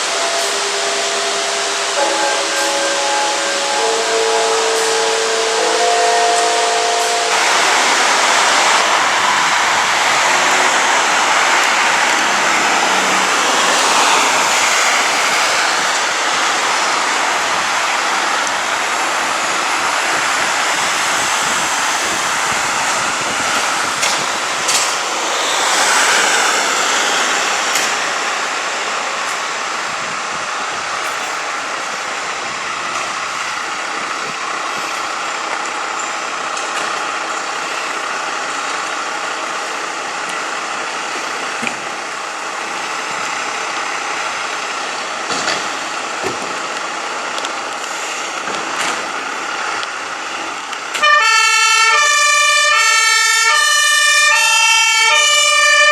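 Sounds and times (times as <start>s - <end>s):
fire engines running: 0.0s - 55.9s
air-brake hisses: 21.2s - 28.2s.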